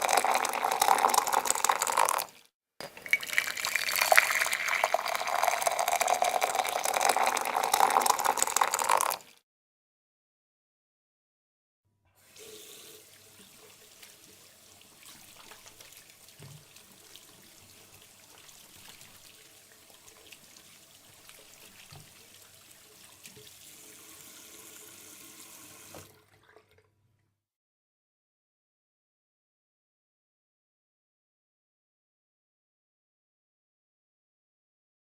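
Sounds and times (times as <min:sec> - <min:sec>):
tap running water into sink: 0:00.0 - 0:02.2, 0:15.0 - 0:26.8.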